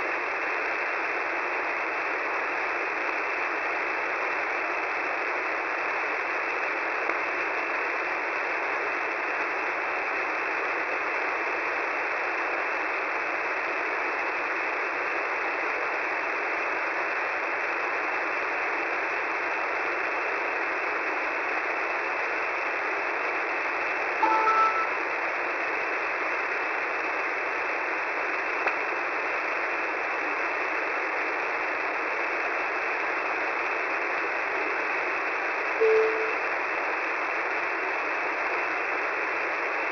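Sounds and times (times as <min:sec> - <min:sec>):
two-note beep: 0:24.2 - 0:25.0, 0:35.8 - 0:36.4.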